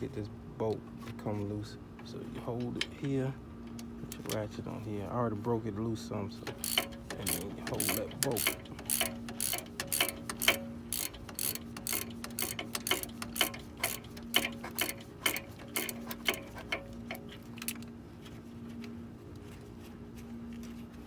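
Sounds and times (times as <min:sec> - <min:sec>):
socket ratchet clicking: 0:06.5 - 0:17.3.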